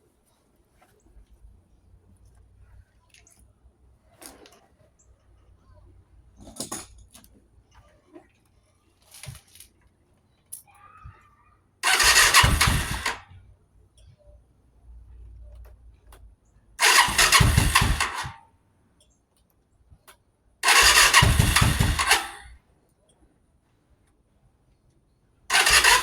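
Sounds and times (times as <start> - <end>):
motorcycle engine cranking: 11.8 - 13.3, 16.8 - 18.4, 20.6 - 22.6, 25.5 - 26.0.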